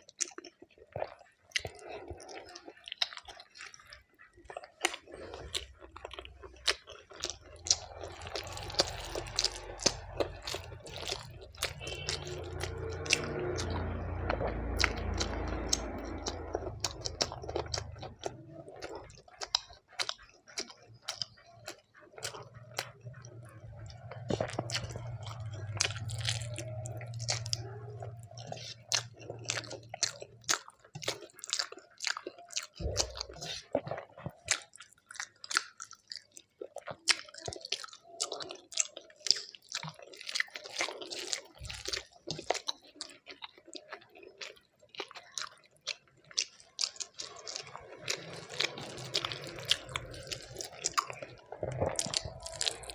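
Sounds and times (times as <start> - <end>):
person chewing with mouth sounds: 0.0 - 52.9
crunchy bites: 37.1 - 52.9.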